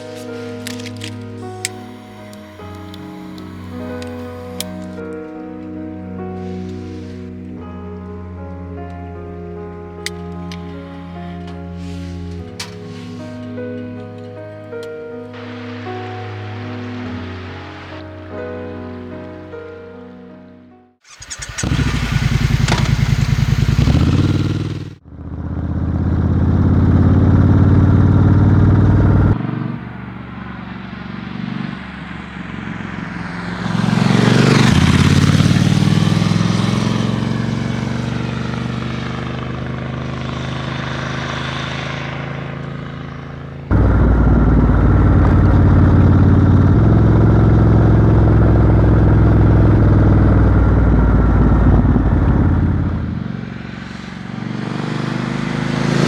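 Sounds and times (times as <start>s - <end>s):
motorcycle engine running: 0.0s - 18.4s, 21.1s - 56.0s.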